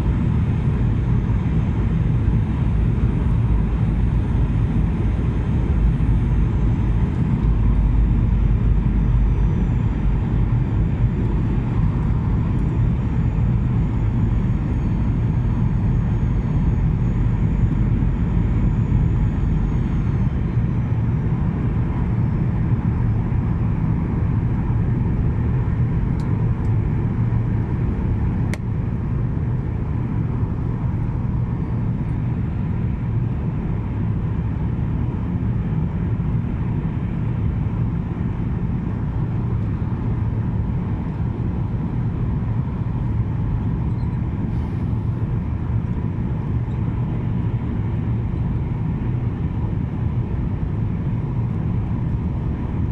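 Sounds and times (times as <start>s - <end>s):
jet engine and airflow noise: 0.0s - 52.9s
faint high whine: 42.6s - 48.7s.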